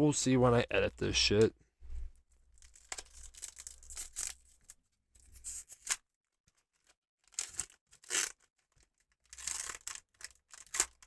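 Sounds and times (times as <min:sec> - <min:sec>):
crinkly packaging rustling and tearing: 0:02.4 - 0:11.0.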